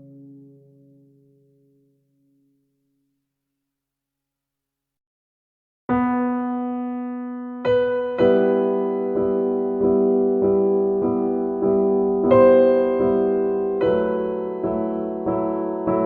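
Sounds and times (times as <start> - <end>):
soft piano chords: 0.0 - 2.5, 5.9 - 16.0.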